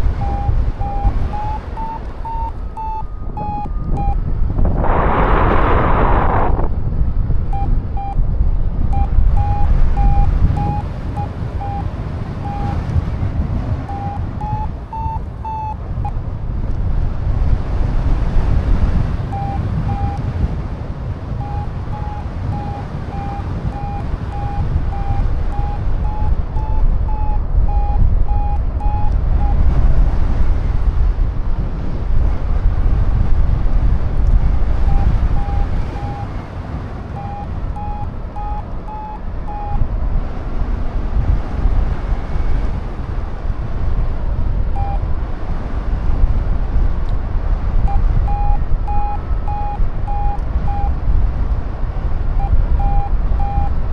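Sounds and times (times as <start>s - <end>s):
variometer beeping: 0.0s - 17.8s, 18.5s - 30.1s, 34.2s - 40.1s, 44.7s - 45.1s, 47.8s - 51.0s, 52.4s - 53.9s
wind rumble on microphone: 0.0s - 53.9s.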